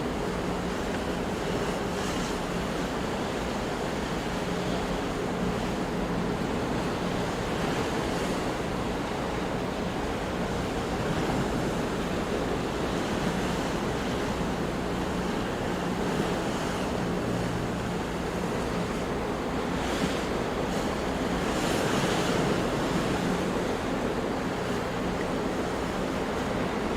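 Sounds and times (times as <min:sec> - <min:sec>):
ocean waves washing onto shore: 0:00.0 - 0:26.9.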